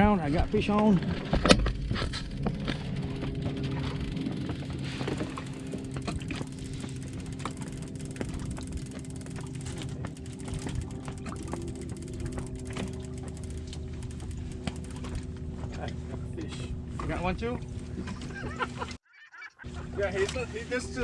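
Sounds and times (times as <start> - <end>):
boat engine humming: 0.7 - 19.0, 19.6 - 21.0
fishing reels clicking: 2.1 - 15.4.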